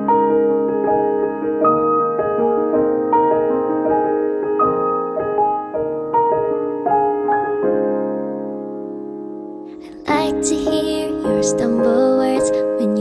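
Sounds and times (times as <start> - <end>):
solo piano broken chords: 0.0 - 13.0.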